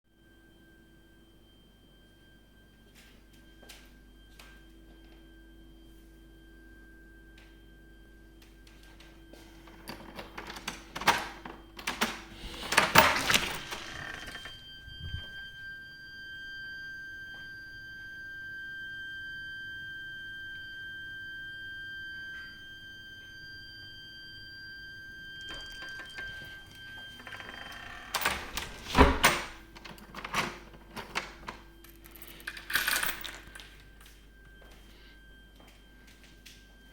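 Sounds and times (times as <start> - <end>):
high-pitched pipe whistle: 14.3 - 28.0, 33.6 - 36.9.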